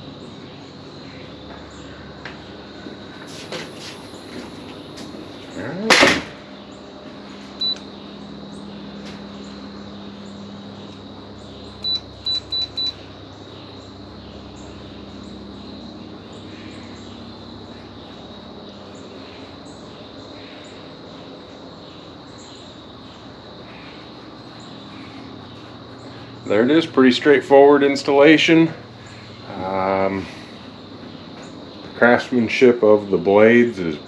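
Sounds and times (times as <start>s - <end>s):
ceiling fan whirring: 0.0s - 34.0s
high electronic beeps: 7.6s - 7.8s, 11.8s - 13.0s.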